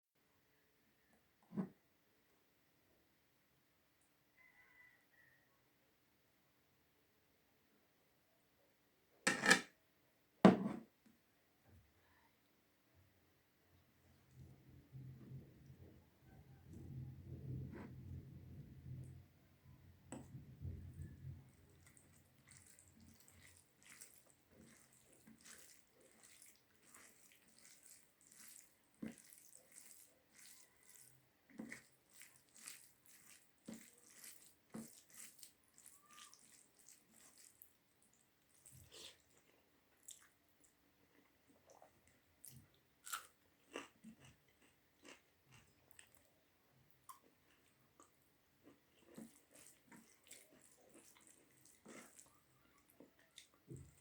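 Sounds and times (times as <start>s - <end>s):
person chewing food: 20.2s - 54.0s.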